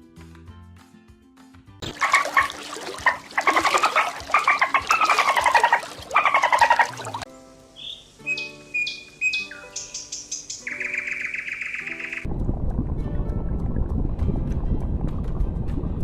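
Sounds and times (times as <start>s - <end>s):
soft background music: 0.0s - 16.0s
animal harsh pulsed calls: 2.0s - 7.2s.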